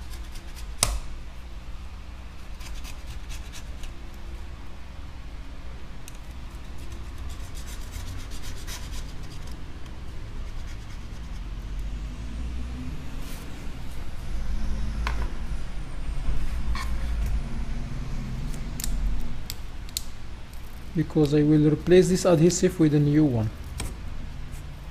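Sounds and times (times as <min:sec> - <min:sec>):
steady low rumble: 0:09.9 - 0:24.9.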